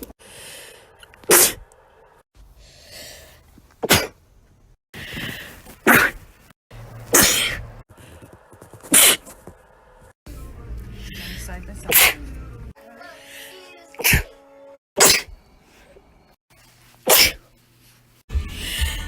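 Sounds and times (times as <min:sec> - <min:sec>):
drawn-in breath: 0:00.1 - 0:01.1, 0:02.0 - 0:03.5, 0:17.8 - 0:19.0
person sneezing: 0:01.3 - 0:01.6, 0:03.8 - 0:04.2, 0:05.8 - 0:06.2, 0:07.1 - 0:07.6, 0:11.9 - 0:12.2, 0:14.0 - 0:14.4, 0:15.0 - 0:15.4, 0:17.0 - 0:17.5.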